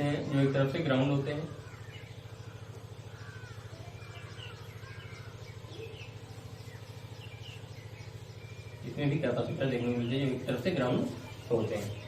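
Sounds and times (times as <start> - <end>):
faint bird chirps: 0.0 - 12.0
low hum with flutter: 0.0 - 12.0.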